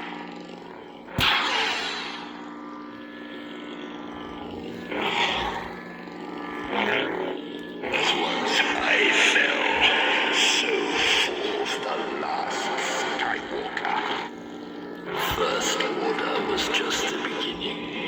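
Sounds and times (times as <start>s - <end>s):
lightsaber low hum: 0.0s - 18.0s
lightsaber clash: 1.1s - 14.3s, 15.1s - 17.7s
lightsaber swing sounds: 1.2s - 2.4s.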